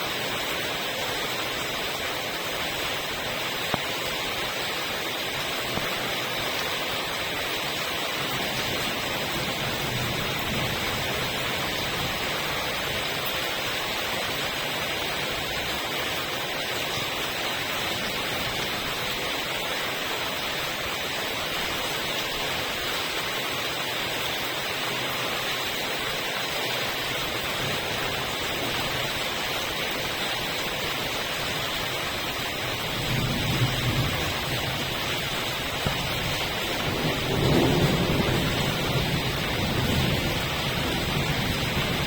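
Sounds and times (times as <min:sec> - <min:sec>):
steady rain: 0:00.0 - 0:42.0
low rumble of thunder: 0:08.5 - 0:15.9, 0:32.0 - 0:42.0.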